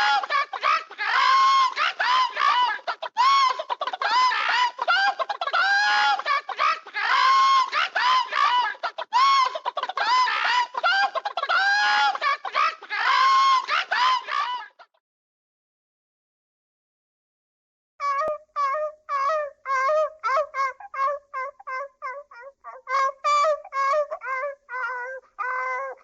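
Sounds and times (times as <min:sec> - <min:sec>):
chicken clucking and squawking: 0:00.0 - 0:12.8.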